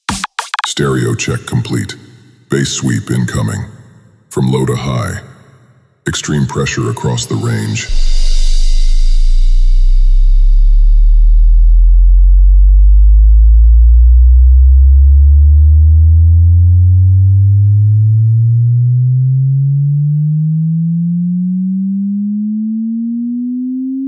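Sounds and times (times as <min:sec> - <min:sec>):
rising bass sine tone: 0:07.9 - 0:24.0.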